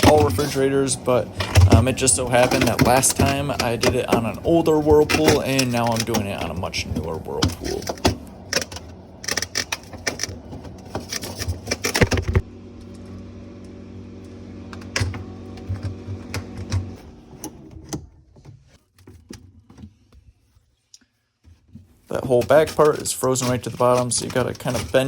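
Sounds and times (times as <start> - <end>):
clicks and rattles of parts: 0.0 - 12.4, 21.4 - 25.0
refrigerator hum: 0.0 - 20.7, 21.4 - 25.0.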